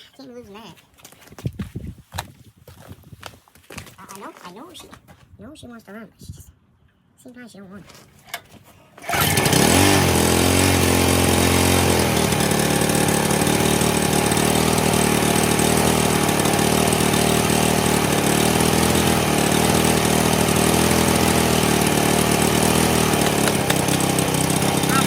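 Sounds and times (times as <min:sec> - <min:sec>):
generator engine running rough: 0:09.0 - 0:25.0.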